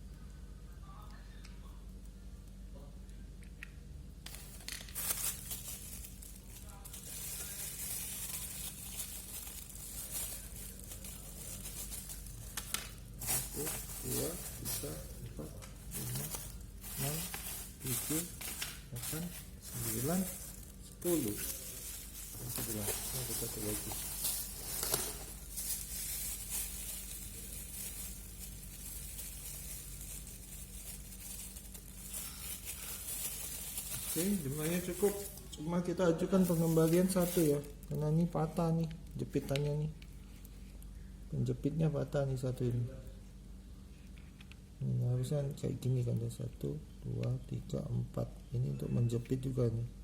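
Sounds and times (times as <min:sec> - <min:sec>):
steady low hum: 0:00.0 - 0:50.0
plastic packaging crinkling: 0:04.2 - 0:39.1.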